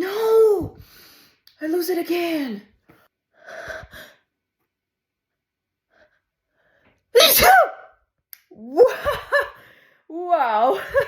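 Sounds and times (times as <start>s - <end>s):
woman sneezing: 7.2s - 7.9s.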